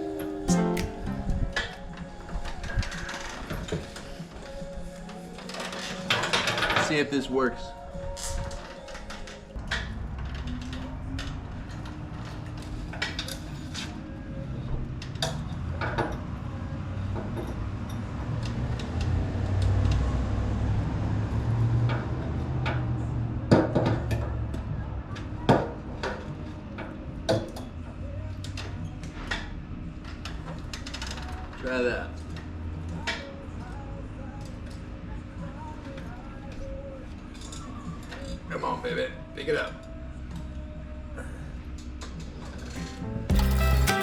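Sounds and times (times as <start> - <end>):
chain and hook clinking: 43.3 - 44.0.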